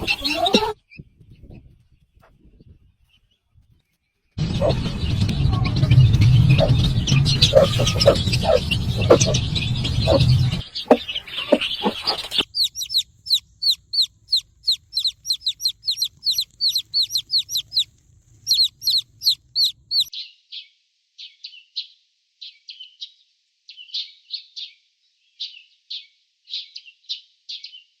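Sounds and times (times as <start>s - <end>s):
chicks peeping: 0.0s - 2.4s, 4.4s - 20.1s.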